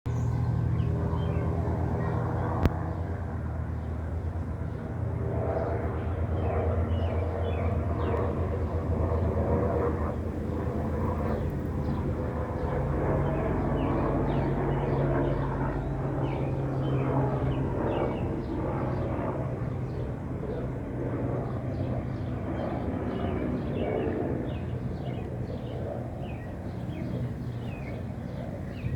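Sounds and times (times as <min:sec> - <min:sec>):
low motor drone: 0:00.1 - 0:19.2.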